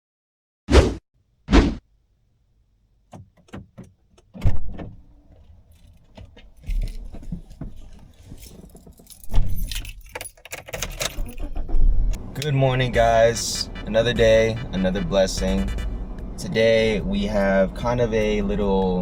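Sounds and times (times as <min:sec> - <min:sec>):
loud thump: 0:00.7 - 0:01.8
car engine rumble: 0:01.2 - 0:19.0
small rattles: 0:03.0 - 0:14.5
keys jangling: 0:05.3 - 0:11.7.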